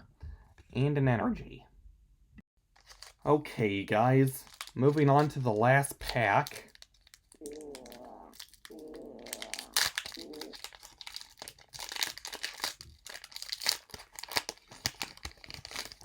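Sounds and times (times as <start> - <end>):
foil wrapper crinkling: 2.7 - 3.3, 3.9 - 16.0.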